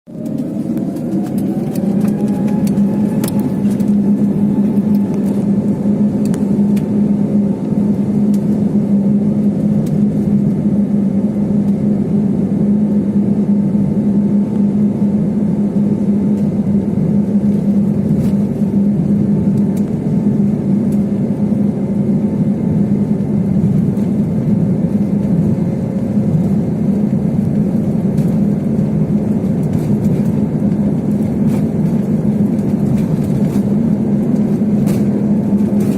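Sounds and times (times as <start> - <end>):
engine and airflow drone: 0.0 - 35.9
constant low hum: 0.1 - 35.9.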